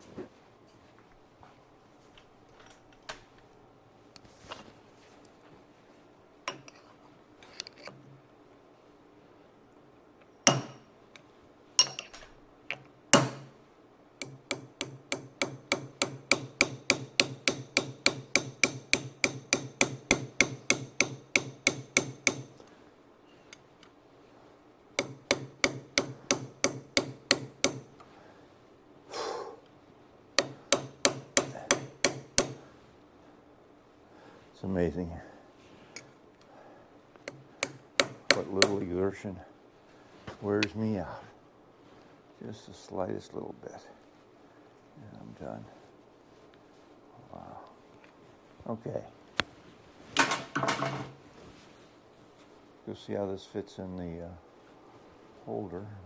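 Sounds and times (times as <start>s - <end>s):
hammer striking metal pin: 10.4s - 10.9s, 11.8s - 13.5s, 14.2s - 22.6s, 25.0s - 28.0s, 30.4s - 32.6s, 37.2s - 38.8s.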